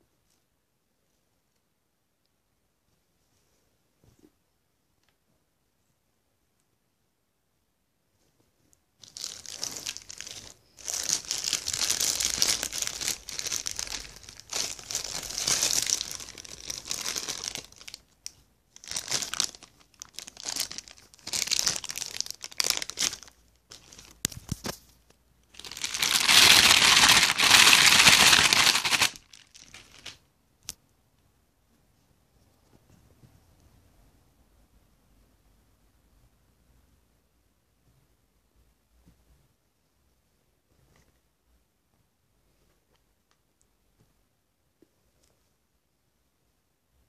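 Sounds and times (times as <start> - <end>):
packaging crinkling: 9.0 - 18.1, 18.8 - 24.8, 25.5 - 30.2.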